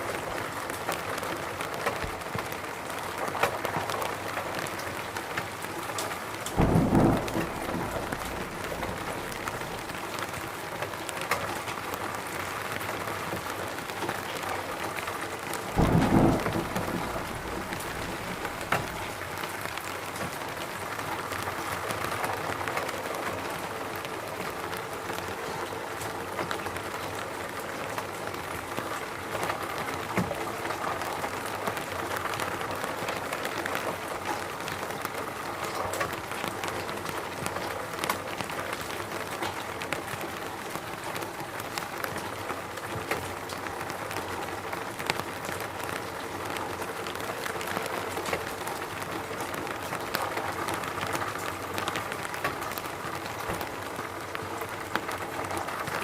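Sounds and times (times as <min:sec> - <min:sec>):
steady rain falling: 0:00.0 - 0:56.0
low rumble: 0:06.6 - 0:10.0, 0:15.8 - 0:19.2.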